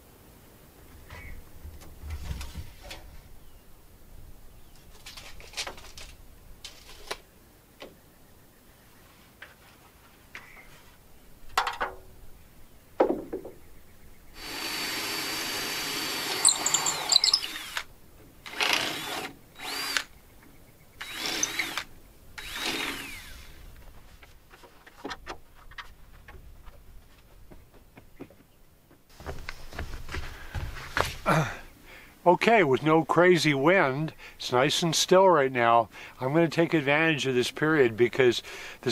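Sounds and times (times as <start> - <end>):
power drill running: 14.4 - 20.1, 21.0 - 23.6
knocks and handling clicks: 16.4 - 17.9.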